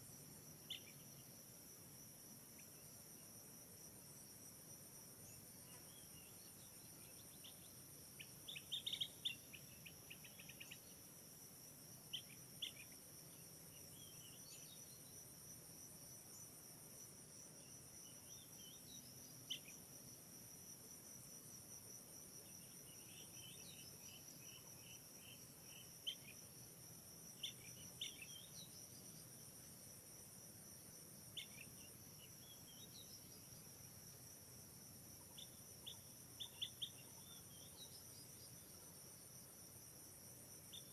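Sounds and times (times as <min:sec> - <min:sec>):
bird chirps: 0:07.1 - 0:10.8.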